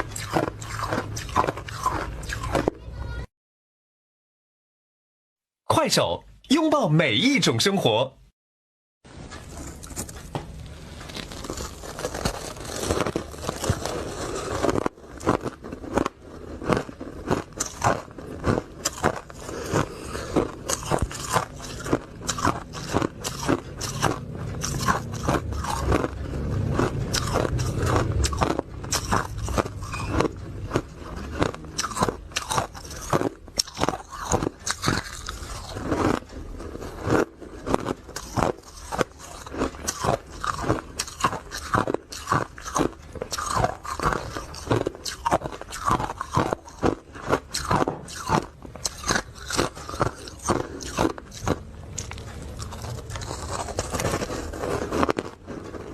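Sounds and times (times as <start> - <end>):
ice crunching being chewed: 0.0 - 2.8, 9.3 - 55.9
low rumble: 22.1 - 32.4.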